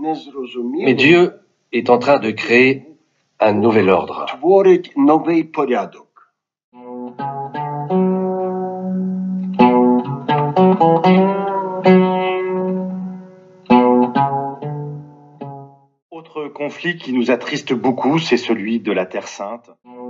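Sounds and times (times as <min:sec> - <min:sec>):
guitar plucked notes and chords: 0:06.8 - 0:15.8.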